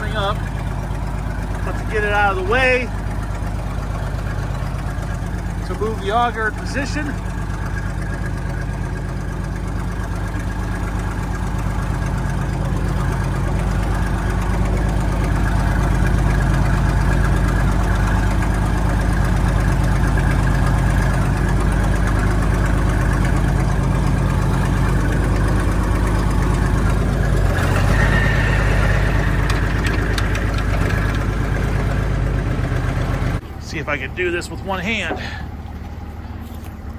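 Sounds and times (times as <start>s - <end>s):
engine knock: 0.0s - 33.5s
tractor engine running slowly: 0.0s - 36.9s.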